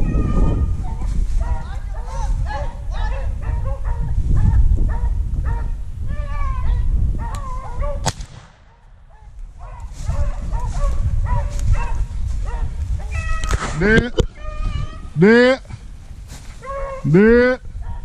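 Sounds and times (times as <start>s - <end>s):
beagles baying: 0.0s - 8.0s, 8.6s - 15.7s, 16.6s - 18.0s
shotgun shot: 8.0s - 9.0s.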